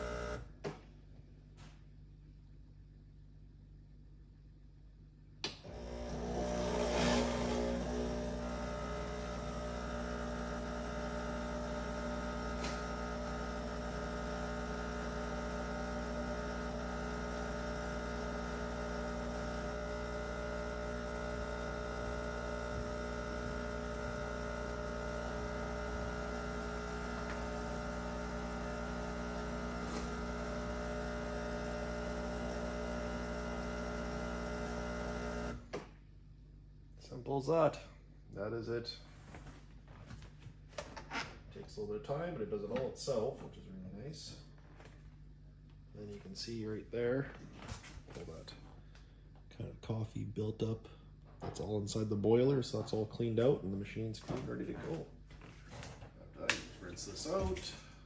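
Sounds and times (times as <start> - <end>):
espresso machine pump humming: 0.0 - 0.6, 5.5 - 35.9.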